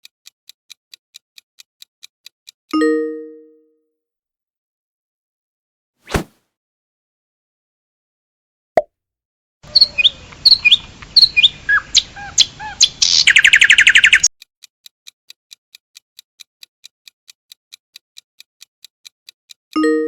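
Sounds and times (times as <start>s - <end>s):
timer ticking softly: 0.0s - 3.0s, 14.4s - 20.0s.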